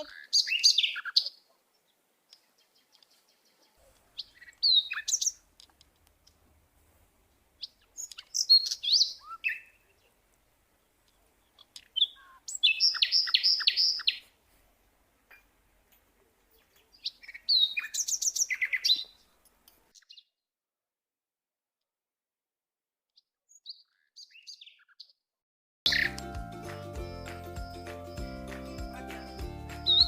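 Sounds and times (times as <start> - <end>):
small birds chirping: 0.0 - 20.4, 23.1 - 25.3, 25.9 - 30.0
music: 25.9 - 30.0.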